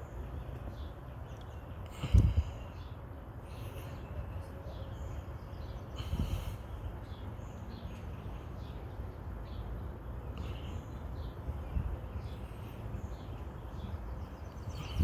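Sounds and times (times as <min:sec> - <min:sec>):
small birds chirping: 0:00.0 - 0:15.0
steady low rumble: 0:01.8 - 0:02.8.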